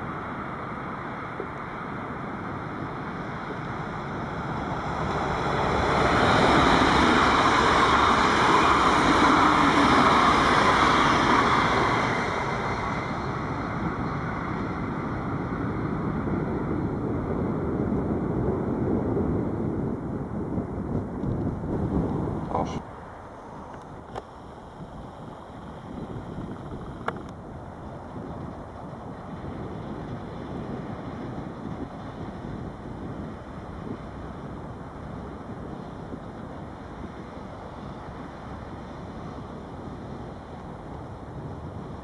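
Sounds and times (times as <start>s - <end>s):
train passing rumble: 0.0s - 42.0s.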